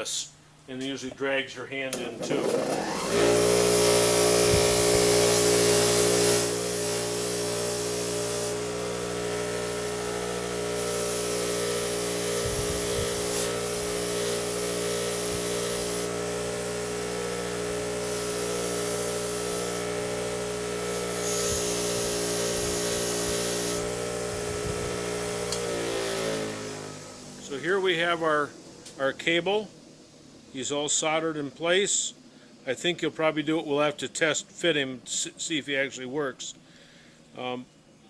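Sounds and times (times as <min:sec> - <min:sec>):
wire wheel motor running: 0:02.0 - 0:30.5
rasping hiss of wire brush: 0:10.8 - 0:16.1, 0:18.0 - 0:19.8.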